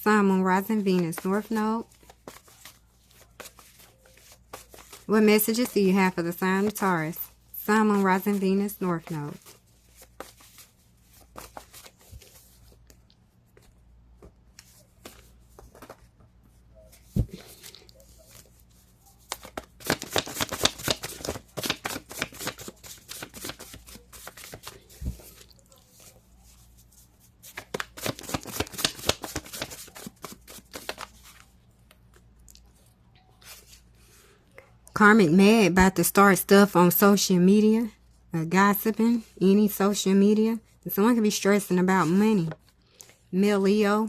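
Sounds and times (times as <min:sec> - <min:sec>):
cards being shuffled: 0:00.8 - 0:05.8, 0:07.9 - 0:13.0, 0:13.6 - 0:16.2, 0:16.9 - 0:32.3.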